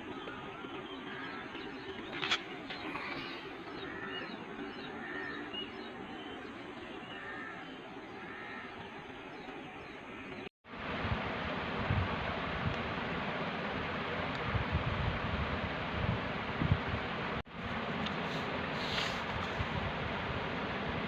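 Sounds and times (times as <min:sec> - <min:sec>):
birds chirping: 0:00.0 - 0:10.5
steady outdoor hiss: 0:00.0 - 0:21.0.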